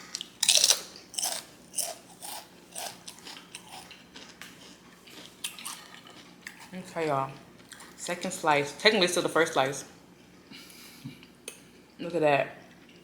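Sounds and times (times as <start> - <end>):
chewing: 0.1 - 8.0.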